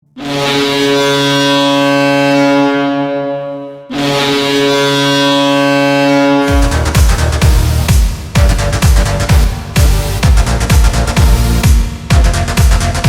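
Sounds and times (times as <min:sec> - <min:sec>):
arena goal horn blasts: 0:00.1 - 0:07.2.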